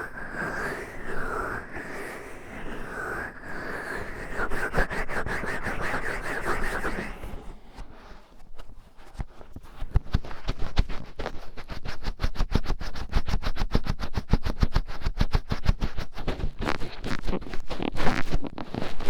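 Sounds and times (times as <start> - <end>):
fingertip scratching on microphone: 4.3 - 19.0.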